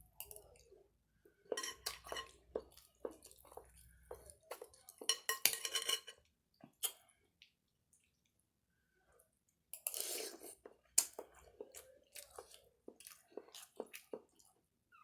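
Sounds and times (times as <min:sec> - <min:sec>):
chewing with wet clicks: 0:01.9 - 0:05.2, 0:10.7 - 0:14.7.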